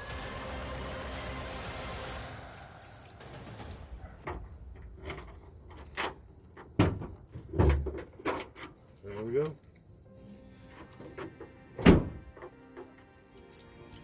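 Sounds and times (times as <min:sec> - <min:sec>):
steady rushing noise: 0:00.0 - 0:04.3
key ring jangling: 0:02.5 - 0:03.4, 0:13.3 - 0:14.0.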